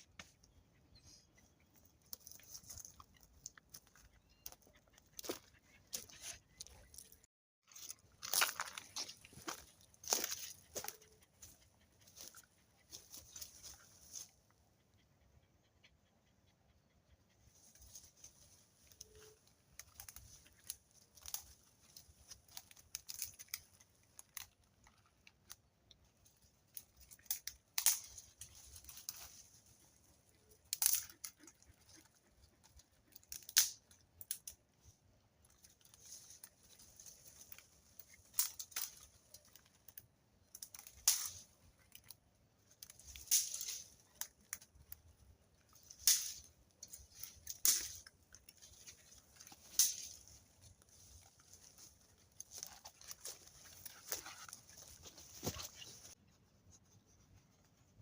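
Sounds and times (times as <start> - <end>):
rustling and crackling: 17.5 - 56.2.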